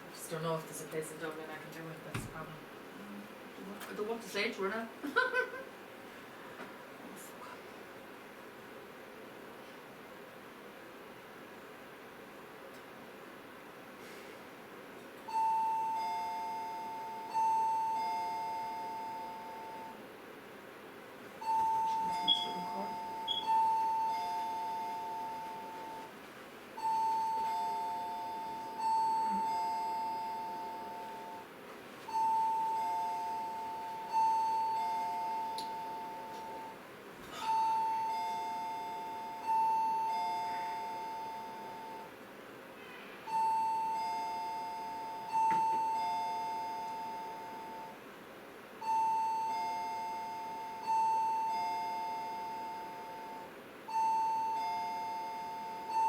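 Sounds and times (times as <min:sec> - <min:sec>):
two-note alarm chime: 0:15.3 - 0:20.0, 0:21.4 - 0:26.1, 0:26.8 - 0:31.4, 0:32.1 - 0:36.8, 0:37.4 - 0:42.1, 0:43.2 - 0:48.0, 0:48.8 - 0:56.0.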